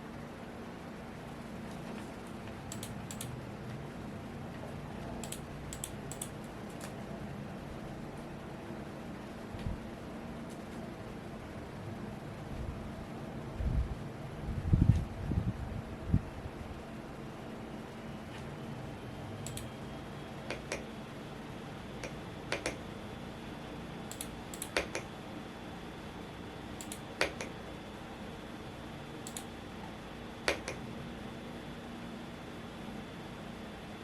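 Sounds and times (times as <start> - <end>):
fan rushing: 0.8 - 25.3
mechanical keyboard keystrokes: 2.7 - 3.3, 5.2 - 6.9, 19.5 - 19.7, 24.1 - 25.1.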